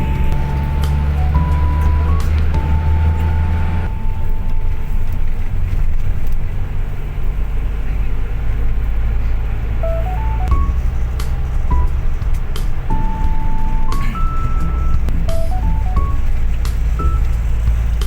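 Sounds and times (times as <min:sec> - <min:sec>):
held high tone: 0:00.0 - 0:05.4, 0:09.8 - 0:11.1, 0:12.9 - 0:16.4
vehicle engine and road rumble: 0:00.0 - 0:18.0
short tones: 0:09.8 - 0:11.0, 0:12.9 - 0:16.4.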